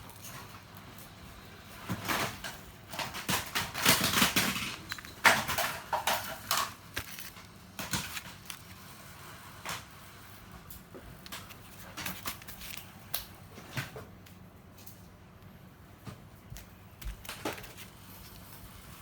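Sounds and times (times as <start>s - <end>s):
handling scrapes clicks and knocks: 1.9s - 8.9s, 10.8s - 13.0s.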